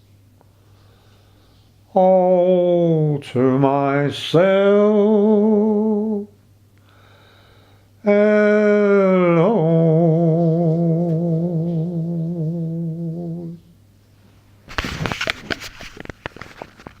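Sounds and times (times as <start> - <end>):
man singing: 1.9 - 6.4, 8.0 - 13.7.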